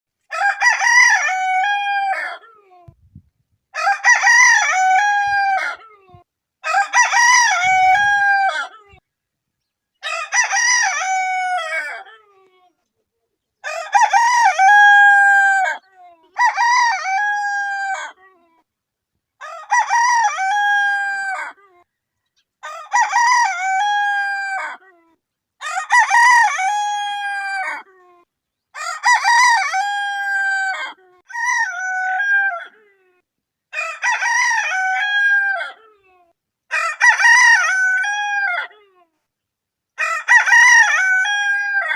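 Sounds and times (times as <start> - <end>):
rooster crowing: 0.3 - 2.4, 3.7 - 5.8, 6.6 - 8.8, 10.0 - 12.1, 13.6 - 18.2, 19.4 - 21.6, 22.6 - 24.8, 25.6 - 27.9, 28.7 - 32.8, 33.7 - 35.8, 36.7 - 38.8, 40.0 - 41.9.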